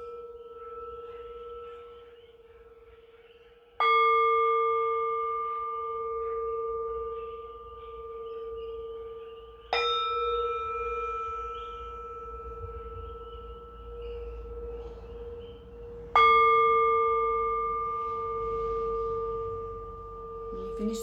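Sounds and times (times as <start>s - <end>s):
singing bowls ringing: 0.0s - 21.0s.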